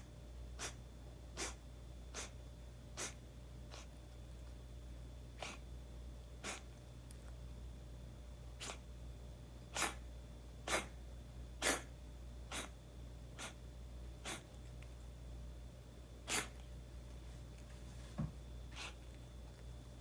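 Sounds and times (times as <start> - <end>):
cat sneezing: 0.0 - 4.0, 5.3 - 5.7, 6.4 - 6.8, 8.6 - 8.9, 9.7 - 11.0, 11.6 - 12.8, 13.4 - 13.6, 14.2 - 14.6, 16.2 - 16.7, 18.7 - 19.1.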